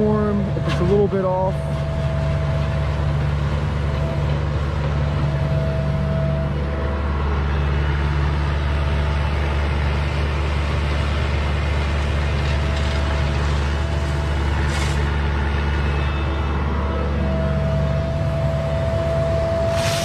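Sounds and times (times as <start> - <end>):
diesel engine running: 0.0 - 20.0
short hiss: 19.7 - 20.0.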